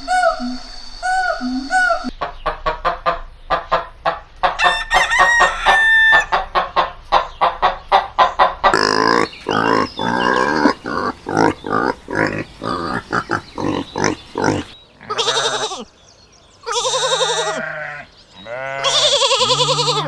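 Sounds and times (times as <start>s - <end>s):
chickens clucking: 0.0s - 14.8s
rooster crowing: 4.6s - 6.5s.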